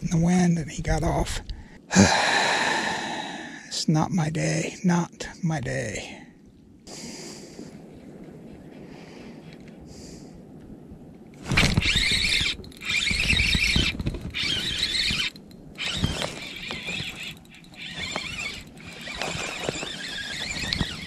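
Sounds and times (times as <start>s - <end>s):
fishing reel whirring and squealing: 11.5s - 21.0s.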